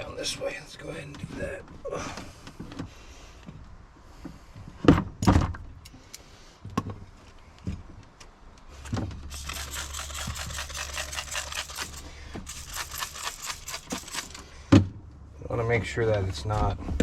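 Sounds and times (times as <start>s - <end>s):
crackly rustling: 8.8s - 14.6s.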